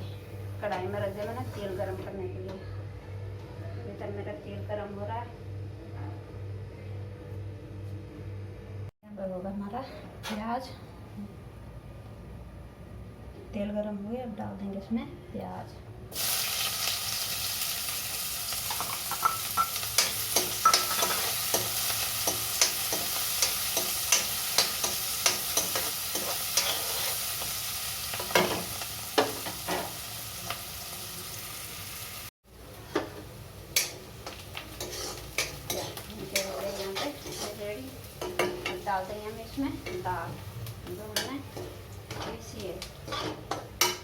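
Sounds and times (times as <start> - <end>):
onions sizzling in hot oil: 16.1 - 44.0
spatula scraping pan: 19.7 - 27.3, 34.7 - 38.9, 41.1 - 44.0.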